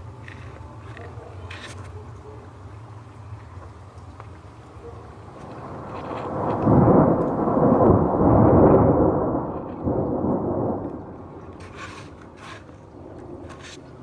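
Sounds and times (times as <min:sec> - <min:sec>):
thunder rumbling: 0:05.2 - 0:14.0.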